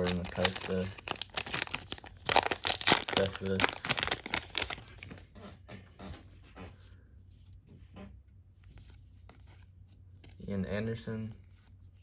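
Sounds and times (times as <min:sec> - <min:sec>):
cards rustling and ticking: 0:00.0 - 0:05.3.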